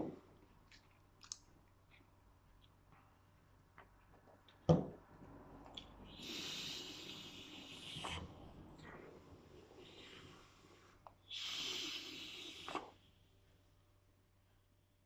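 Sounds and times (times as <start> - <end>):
person exhaling vapour: 6.1 - 8.4, 9.8 - 13.0.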